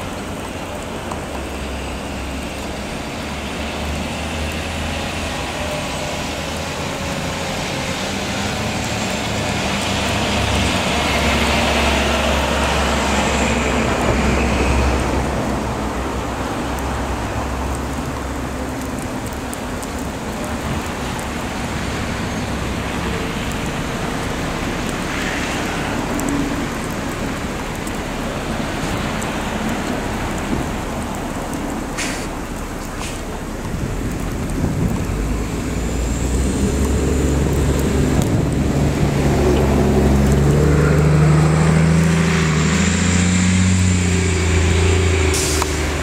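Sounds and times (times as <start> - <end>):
bus engine rumble: 0.0 - 46.0
traffic noise: 0.0 - 46.0
tyres hissing through slush: 21.4 - 33.6, 42.2 - 46.0.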